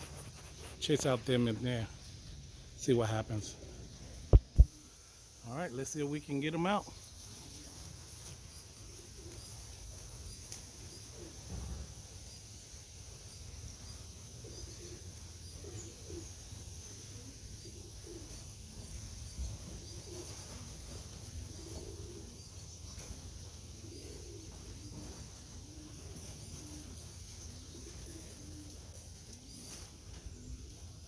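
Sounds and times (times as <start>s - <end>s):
pigeons cooing: 7.2s - 31.0s.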